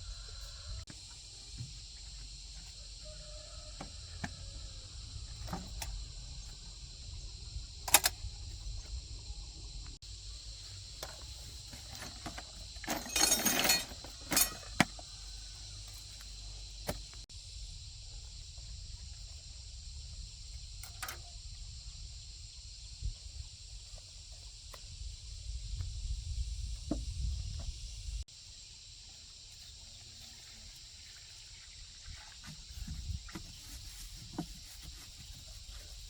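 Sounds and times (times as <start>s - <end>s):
insects chirring: 0.0s - 36.0s
metal clinking and scraping: 11.0s - 15.0s.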